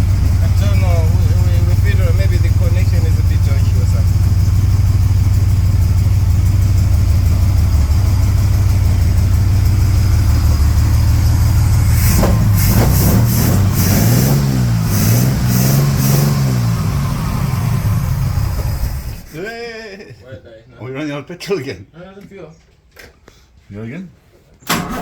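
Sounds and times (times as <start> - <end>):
car engine revving: 0.0 - 19.4.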